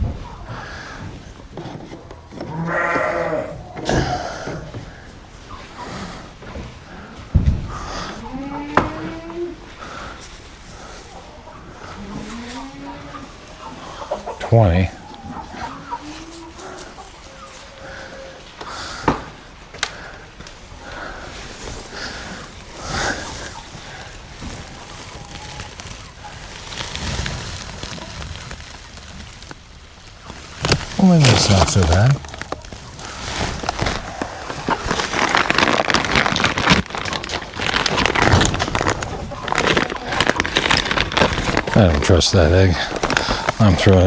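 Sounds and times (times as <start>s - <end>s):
hens clucking softly: 0.1s - 27.1s
nest bedding rustling: 8.0s - 18.6s, 19.3s - 44.0s.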